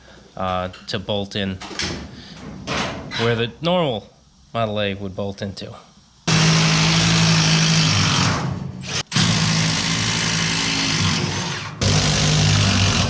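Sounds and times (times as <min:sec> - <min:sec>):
power tool running: 0:06.3 - 0:13.0.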